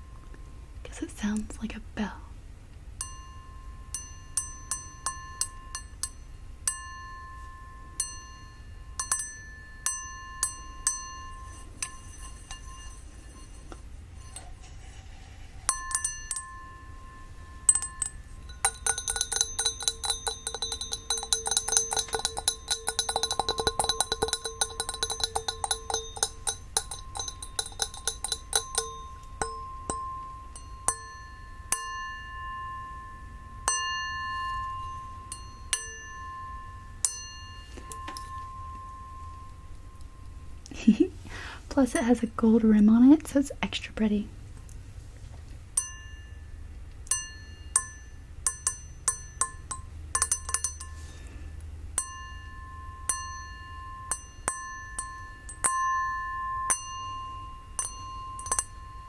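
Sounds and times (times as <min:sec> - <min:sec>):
glass tapped ringing: 0:03.0 - 0:14.9, 0:15.6 - 0:40.6, 0:45.8 - 0:59.0.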